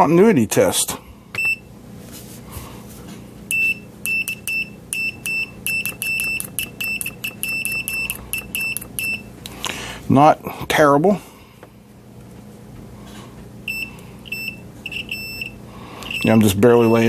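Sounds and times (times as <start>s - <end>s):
multimeter continuity beeps: 1.4s - 1.7s, 3.5s - 9.3s, 13.6s - 17.0s.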